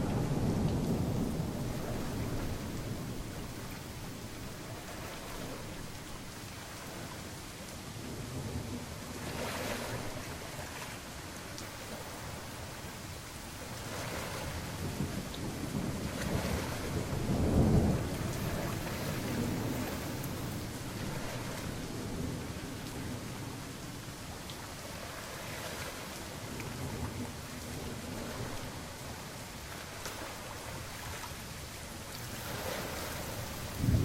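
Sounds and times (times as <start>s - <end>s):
rolling thunder: 0.0s - 7.0s, 13.8s - 24.1s, 32.2s - 34.0s
heavy rain: 0.0s - 34.0s.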